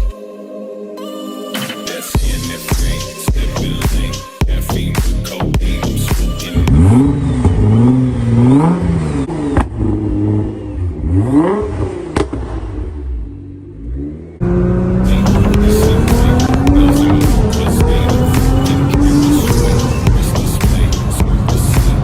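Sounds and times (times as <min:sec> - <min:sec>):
music beat: 0:01.4 - 0:07.2, 0:15.1 - 0:22.0
car engine revving: 0:05.7 - 0:22.0.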